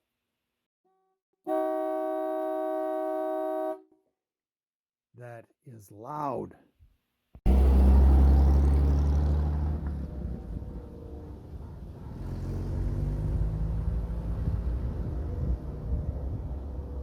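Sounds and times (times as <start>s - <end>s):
car engine running: 7.5s - 17.0s.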